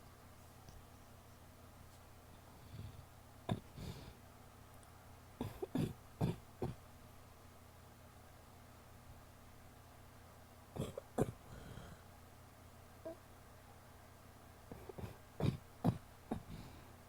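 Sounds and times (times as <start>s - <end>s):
woman coughing wetly: 5.4s - 6.8s, 14.8s - 16.5s.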